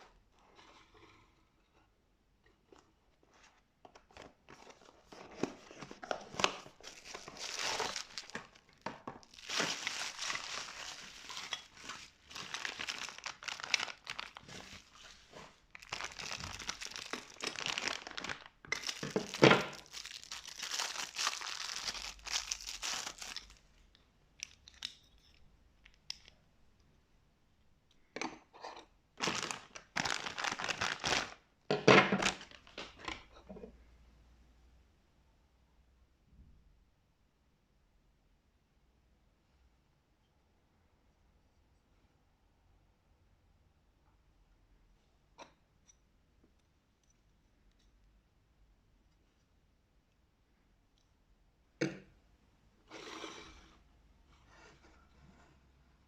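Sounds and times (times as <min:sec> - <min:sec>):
packaging crinkling and tearing: 0:05.1 - 0:23.6, 0:29.2 - 0:31.4, 0:32.2 - 0:33.0.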